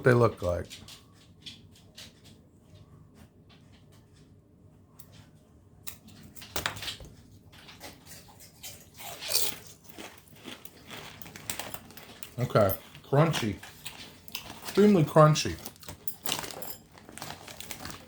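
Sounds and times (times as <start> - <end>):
crunching potato chips: 7.6 - 18.0.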